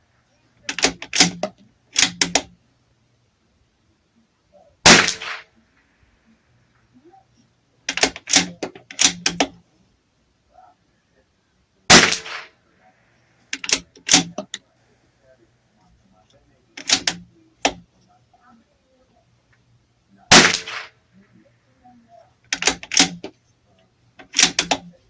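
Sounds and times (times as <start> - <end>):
rifle bolt metallic clicks: 0.7 - 2.5, 7.9 - 9.6, 13.5 - 14.6, 16.8 - 17.8, 22.5 - 23.3, 24.2 - 24.8
rifle shots: 0.7 - 2.5, 4.8 - 5.5, 11.9 - 12.6, 20.3 - 21.0, 22.6 - 23.3, 24.3 - 24.8.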